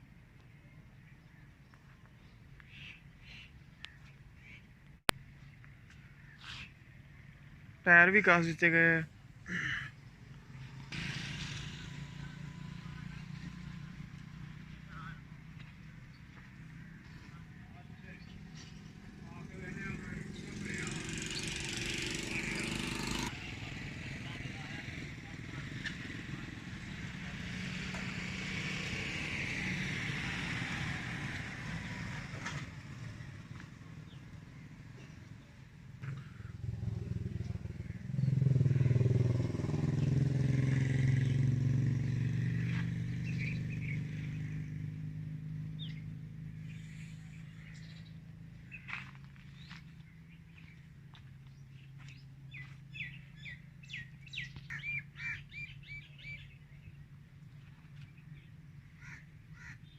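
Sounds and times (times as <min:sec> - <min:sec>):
birds chirping: 0:00.4 - 0:23.3, 0:33.2 - 0:44.9, 0:45.6 - 0:59.9
vehicle engine running: 0:09.6 - 0:54.7.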